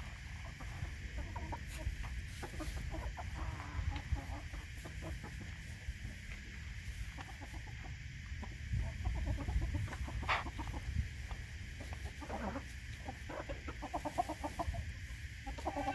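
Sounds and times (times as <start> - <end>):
chickens clucking: 0.0 - 15.9
chicken sharp call: 15.5 - 15.9.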